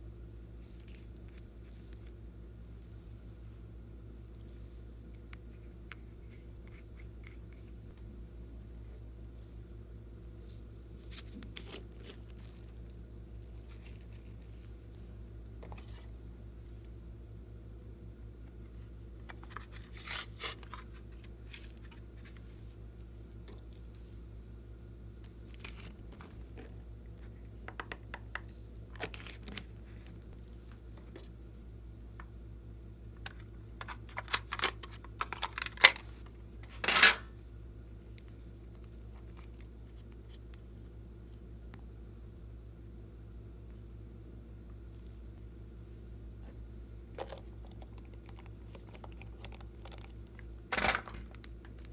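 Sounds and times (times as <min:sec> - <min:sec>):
steady low hum: 0:00.0 - 0:51.9
small clicks and crinkles: 0:00.5 - 0:02.2, 0:09.4 - 0:15.0, 0:19.2 - 0:24.1, 0:25.2 - 0:31.3, 0:33.2 - 0:37.2, 0:38.1 - 0:41.8, 0:46.4 - 0:51.9.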